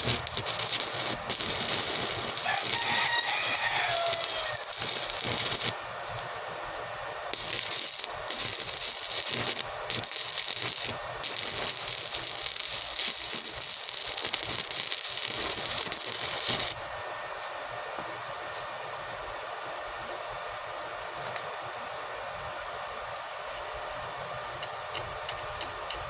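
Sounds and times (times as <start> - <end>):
arc welding crackling and hissing: 0.0 - 6.6, 7.3 - 17.6.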